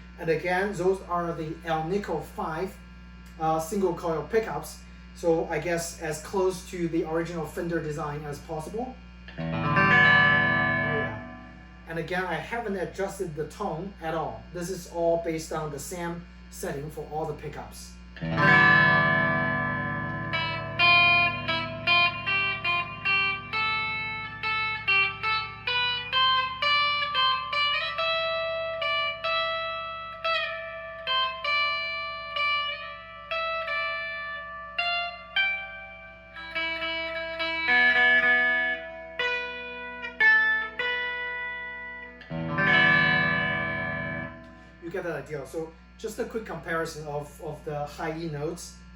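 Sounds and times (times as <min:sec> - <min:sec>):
clean electric guitar notes: 0:09.3 - 0:12.0, 0:18.2 - 0:44.8.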